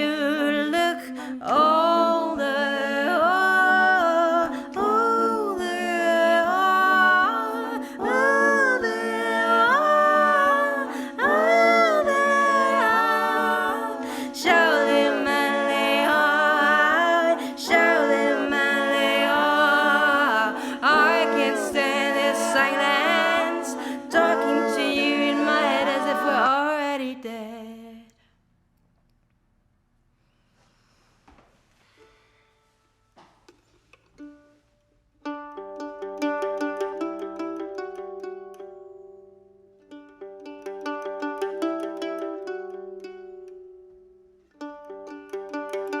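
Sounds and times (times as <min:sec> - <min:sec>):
sustained vocal harmony: 0:00.0 - 0:27.3
wordless female vocal melody: 0:00.0 - 0:28.2.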